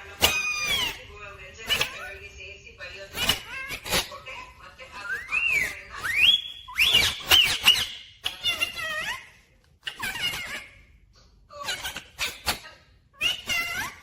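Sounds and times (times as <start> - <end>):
parrot squawky chattering: 0.0 - 2.3, 3.0 - 11.0, 11.6 - 14.0
parrot whistling: 0.2 - 1.0, 5.0 - 9.2.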